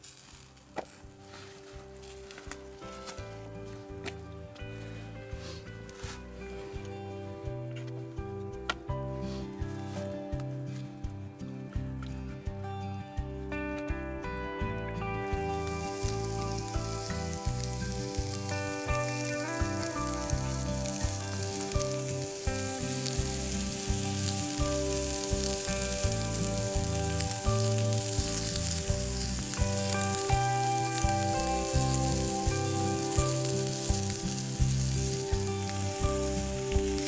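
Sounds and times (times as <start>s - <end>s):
background music: 0.0s - 37.0s
bacon sizzling: 15.5s - 37.0s.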